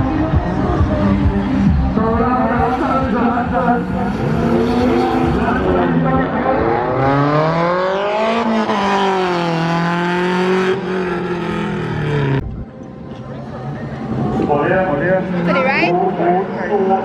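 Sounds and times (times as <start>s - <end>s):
car engine running hard: 0.0s - 12.6s.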